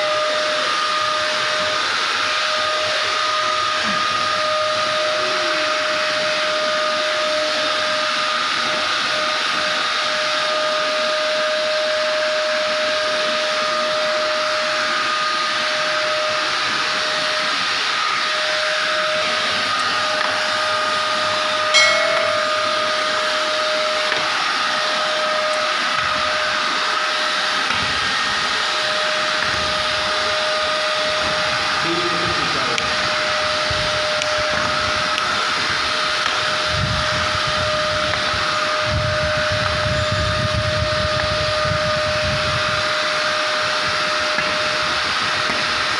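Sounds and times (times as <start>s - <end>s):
vacuum cleaner running on carpet: 0.0s - 19.9s.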